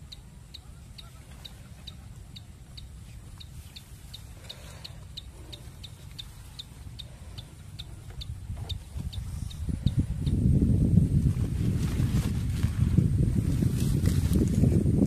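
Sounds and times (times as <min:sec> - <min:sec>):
animal chirping: 0:00.0 - 0:10.0
wind rumble on microphone: 0:00.0 - 0:15.0.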